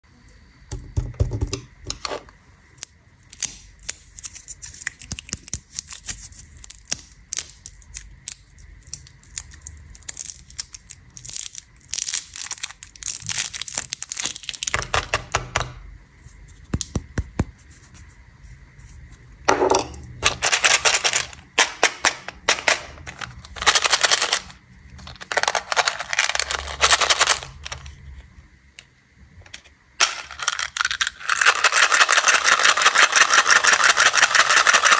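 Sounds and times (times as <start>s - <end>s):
plastic candy wrappers crinkling: 2.7s - 15.2s, 20.2s - 28.1s, 30.0s - 34.9s.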